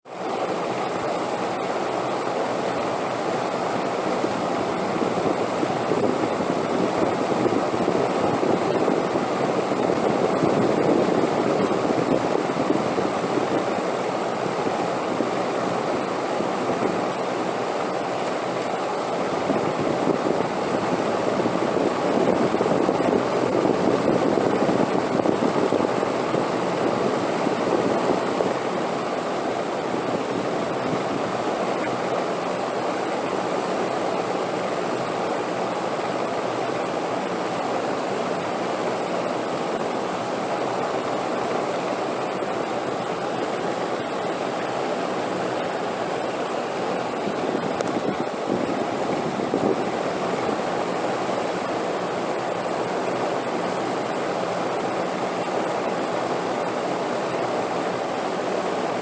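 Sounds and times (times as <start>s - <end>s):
wind gusts: 18.9s - 33.9s, 42.0s - 55.0s.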